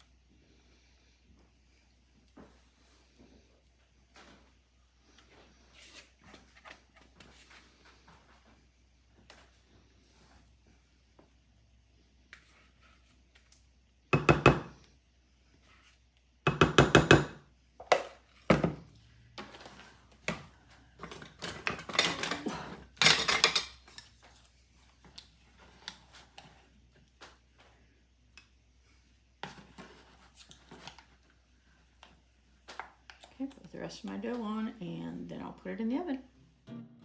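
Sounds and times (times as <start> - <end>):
utensils clattering on dishes: 21.3 - 24.0.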